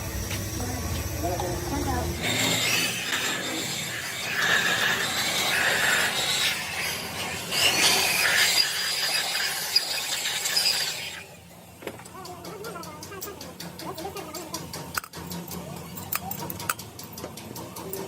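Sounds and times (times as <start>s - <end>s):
abrasive tool scraping metal: 2.1s - 11.3s.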